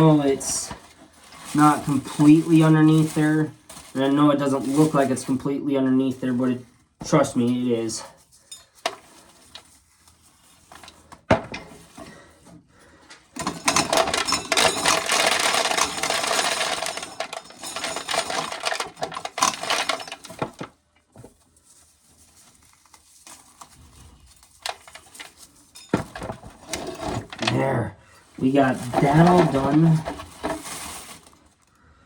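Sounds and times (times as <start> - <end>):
corn sheller clattering: 13.4 - 20.7, 24.4 - 27.8, 28.4 - 31.4.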